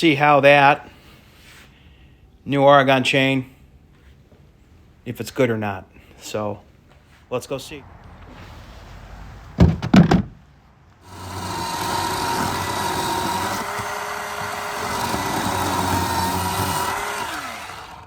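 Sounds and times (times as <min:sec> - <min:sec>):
heavy knocks: 0:09.6 - 0:10.4
chainsaw cutting wood: 0:11.0 - 0:18.0.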